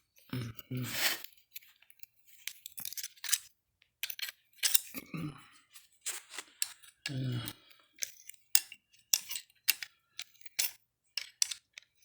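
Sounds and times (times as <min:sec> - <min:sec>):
metal parts clicking and clinking: 0:01.5 - 0:05.0, 0:08.0 - 0:12.0.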